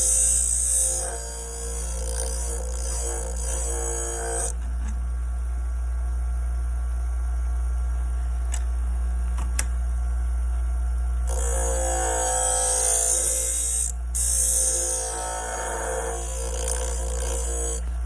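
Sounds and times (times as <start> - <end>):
sharpening wheel machine humming: 0.0 - 5.3, 11.2 - 18.0.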